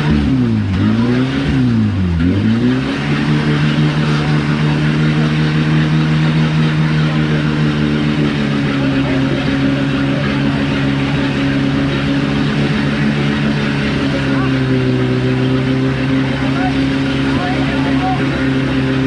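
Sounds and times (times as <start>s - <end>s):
off-road vehicle engine revving: 0.0s - 19.0s.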